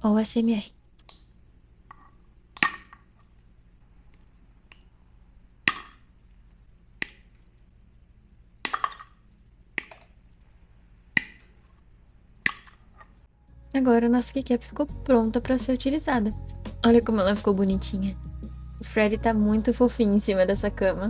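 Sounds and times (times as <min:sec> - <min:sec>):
cutting tool snipping resin: 0:01.9 - 0:03.0, 0:05.6 - 0:06.1, 0:07.0 - 0:07.6, 0:08.6 - 0:10.2, 0:11.1 - 0:11.7, 0:12.4 - 0:13.2.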